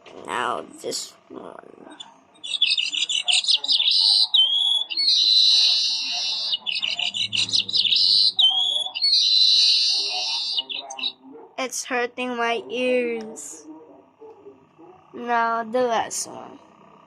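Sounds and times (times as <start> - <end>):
harsh high trilling bird call: 1.9 - 11.2.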